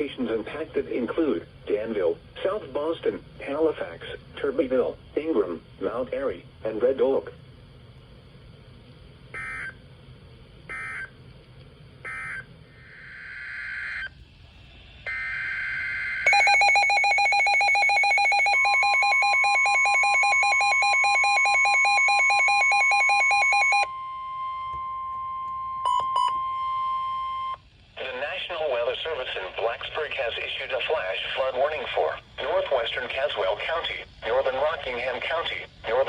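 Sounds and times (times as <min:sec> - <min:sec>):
noisy data bursts: 0:15.0 - 0:23.9, 0:28.0 - 0:36.0.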